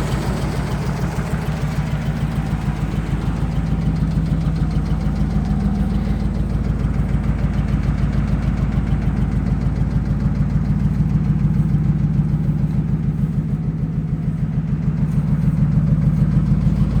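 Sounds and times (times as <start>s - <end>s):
engine idling with rapid knock: 0.0s - 17.0s.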